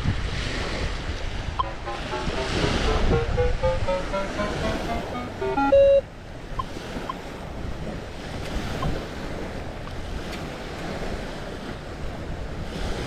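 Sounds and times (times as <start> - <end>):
wind noise on microphone: 0.0 - 1.6
loud held electronic tone: 1.6 - 6.0
short electronic tones: 1.6 - 6.0
faint short beeps: 4.8 - 6.0.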